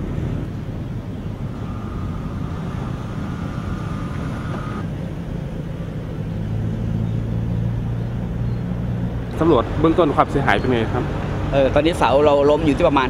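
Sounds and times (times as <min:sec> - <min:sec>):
vehicle engine humming: 0:00.0 - 0:13.0
thin high whine: 0:01.2 - 0:04.9.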